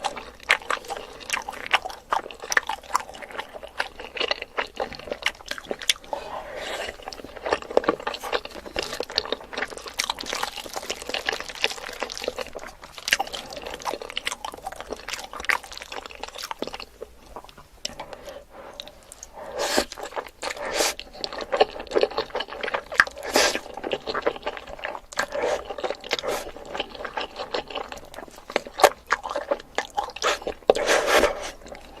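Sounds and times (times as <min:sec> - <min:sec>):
crunching and chewing sweets: 0:00.0 - 0:32.0.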